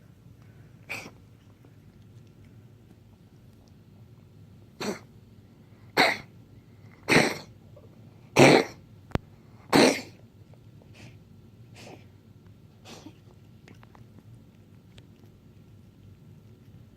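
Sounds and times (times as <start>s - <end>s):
pet coughing: 0.9s - 1.2s, 4.8s - 5.1s, 5.9s - 6.3s, 7.0s - 7.5s, 8.3s - 8.8s, 9.6s - 10.2s, 12.8s - 13.2s.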